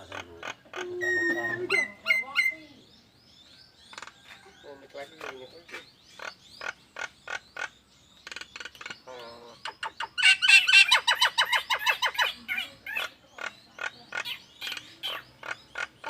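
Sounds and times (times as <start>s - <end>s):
myna calling: 0.0s - 2.9s, 6.2s - 16.0s.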